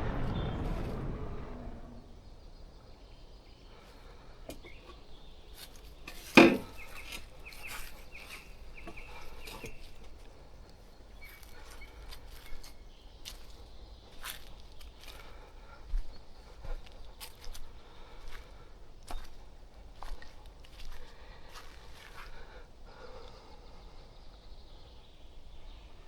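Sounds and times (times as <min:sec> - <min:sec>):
sharp loud crack: 0:00.0 - 0:03.1
quiet forest background: 0:00.0 - 0:26.0.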